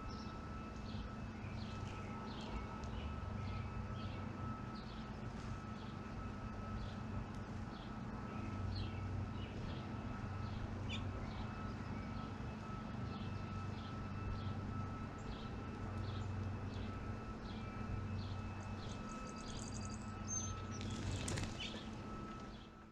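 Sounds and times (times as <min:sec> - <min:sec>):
steady low hum: 0:00.0 - 0:22.9
bird chirping: 0:18.2 - 0:21.9
high bird trill: 0:18.2 - 0:21.9.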